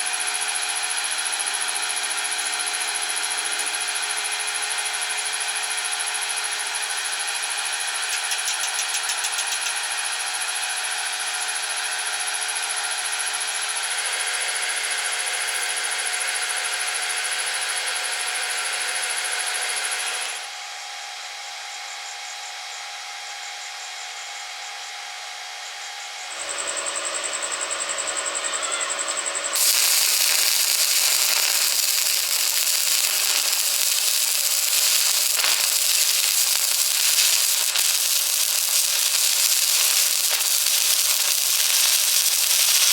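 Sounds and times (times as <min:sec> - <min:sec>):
electric welding arc crackling: 0:15.0 - 0:15.9, 0:29.5 - 0:42.9
power tool whining: 0:26.3 - 0:42.9.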